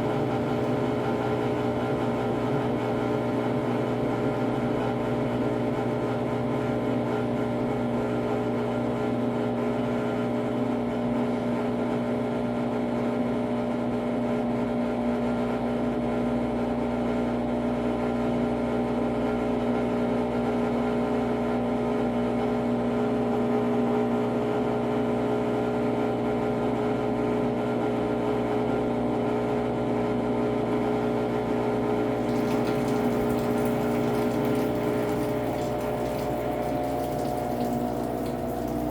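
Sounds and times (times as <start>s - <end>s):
washing machine spinning: 0.0s - 10.9s, 30.6s - 38.9s.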